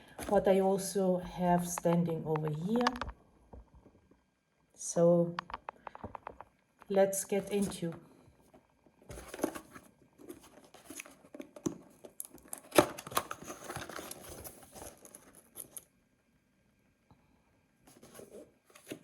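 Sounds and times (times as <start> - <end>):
packaging crinkling and tearing: 12.1 - 15.4.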